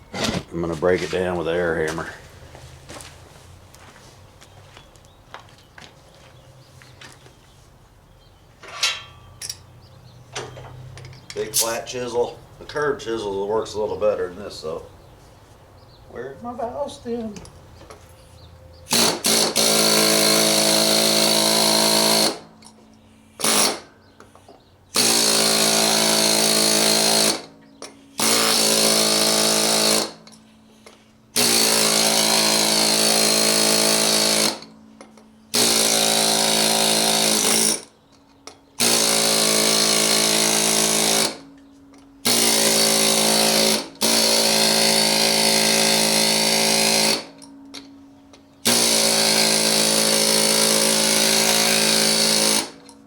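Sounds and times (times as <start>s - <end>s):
pneumatic air hammer bursts: 18.9s - 22.5s, 23.4s - 23.9s, 24.9s - 27.5s, 31.4s - 34.7s, 48.6s - 52.9s.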